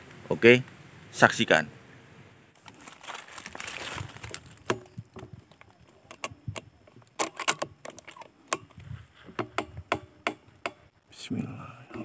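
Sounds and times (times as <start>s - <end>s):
rustle: 0.0s - 12.0s
sharp little clicks and knocks: 4.3s - 10.9s.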